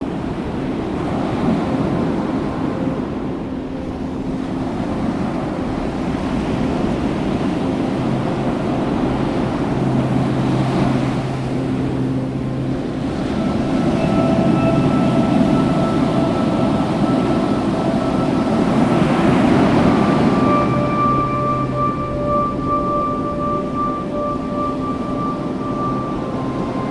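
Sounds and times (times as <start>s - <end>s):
ocean surf: 0.0s - 26.9s
soft held music tones: 0.0s - 26.9s
wind noise on microphone: 0.0s - 26.9s.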